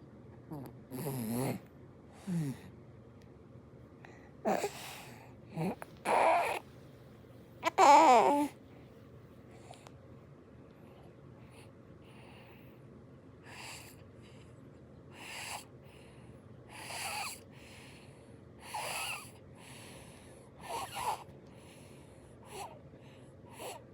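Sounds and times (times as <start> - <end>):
baby snoring: 0.5 - 2.6, 4.5 - 6.6, 7.6 - 8.6, 15.2 - 15.7, 16.7 - 17.4, 18.6 - 19.4, 20.6 - 21.3, 22.5 - 22.8.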